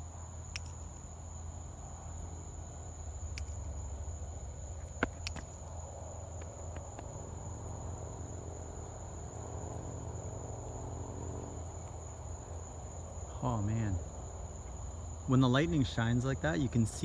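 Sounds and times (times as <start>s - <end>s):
night insects trilling: 0.0s - 17.0s
sharp clicks: 0.5s - 0.9s, 3.3s - 3.7s, 4.9s - 5.6s.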